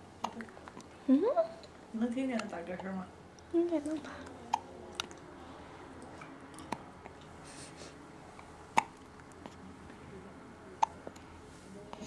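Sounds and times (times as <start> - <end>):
baby hiccupping: 4.5 - 4.7, 8.7 - 9.1, 10.8 - 11.1.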